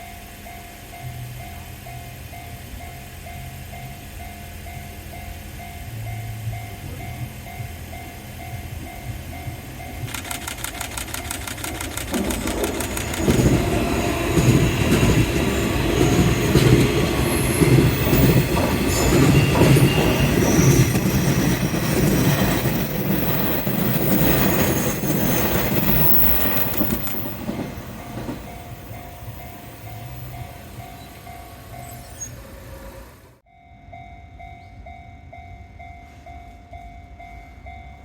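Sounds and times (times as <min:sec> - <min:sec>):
train wheels rumbling on rails: 0:00.0 - 0:33.5
wheel squeal: 0:11.2 - 0:27.4, 0:28.9 - 0:33.4.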